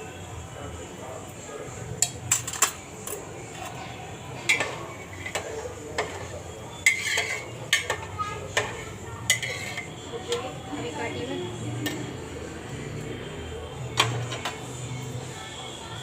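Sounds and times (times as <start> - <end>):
metal spoon scraping cooking pot: 2.0 - 10.5.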